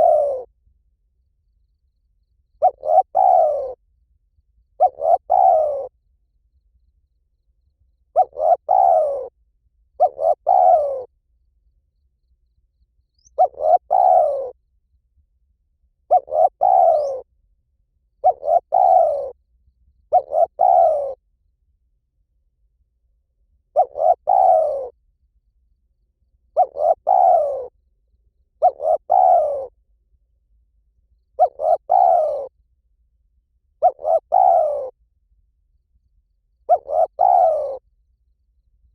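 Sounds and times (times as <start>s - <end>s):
dove cooing: 0.0s - 0.5s, 2.6s - 3.8s, 4.8s - 6.0s, 8.1s - 9.4s, 10.0s - 11.1s, 13.2s - 14.6s, 16.1s - 17.3s, 18.2s - 19.4s, 20.1s - 21.2s, 23.7s - 25.0s, 26.5s - 27.8s, 28.6s - 29.8s, 31.4s - 32.6s, 33.8s - 35.0s, 36.6s - 37.8s.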